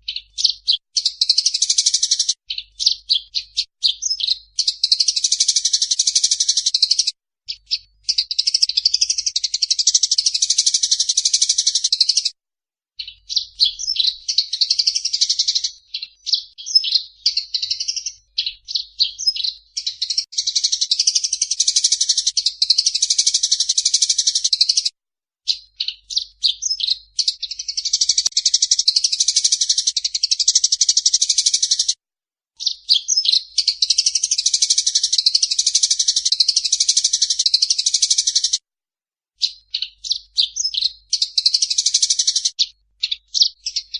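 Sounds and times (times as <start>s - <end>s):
sharp bird chirps: 0.0s - 12.4s, 13.0s - 24.9s, 25.5s - 32.0s, 32.6s - 38.6s, 39.4s - 43.9s
sparrows chattering: 0.0s - 12.4s, 13.0s - 24.9s, 25.5s - 32.0s, 32.6s - 38.6s, 39.4s - 43.9s.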